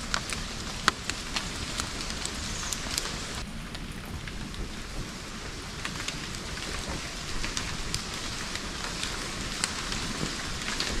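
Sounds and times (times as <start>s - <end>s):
raindrops ticking on a surface: 0.0s - 11.0s
steady rain falling: 0.0s - 11.0s.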